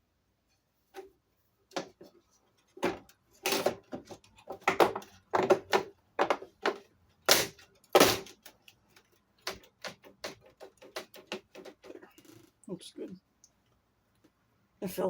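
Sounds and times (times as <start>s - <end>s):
clicks and knocks of hard parts: 2.7s - 12.5s.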